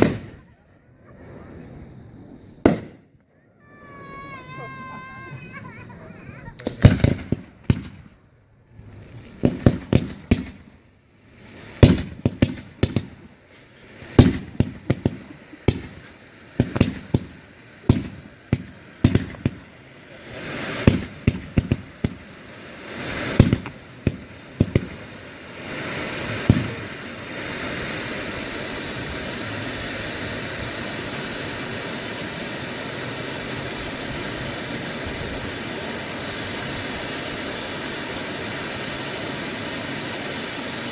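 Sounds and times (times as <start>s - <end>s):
firework shells bursting: 0.0s - 0.5s, 2.4s - 3.3s, 4.1s - 40.9s
firework crackle: 0.0s - 40.9s
steady hiss-like noise: 0.0s - 40.9s.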